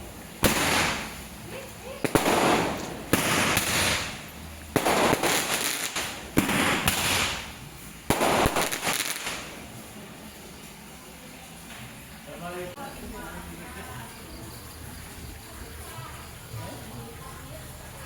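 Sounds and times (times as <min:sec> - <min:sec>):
firework charge hissing: 0:00.0 - 0:11.0.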